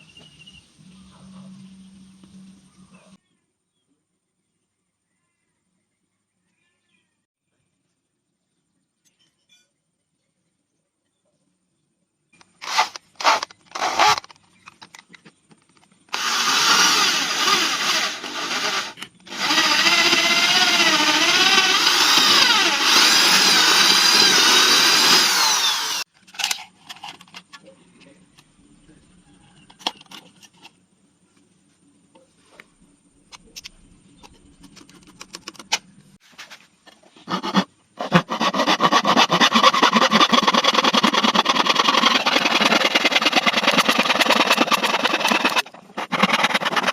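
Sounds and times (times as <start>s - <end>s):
electric drill running: 12.6s - 14.2s, 16.1s - 26.1s, 38.2s - 46.9s.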